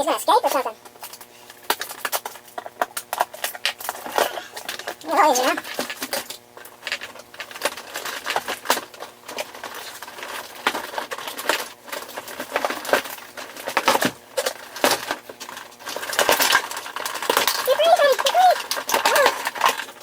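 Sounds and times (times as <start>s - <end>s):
plastic packaging crackling: 0.4s - 20.0s.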